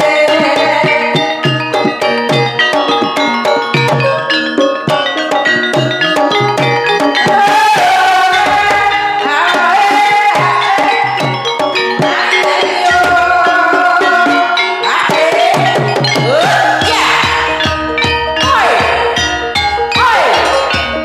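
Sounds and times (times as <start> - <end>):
gamelan music: 0.0 - 21.0
wavering melodic line: 0.0 - 21.0.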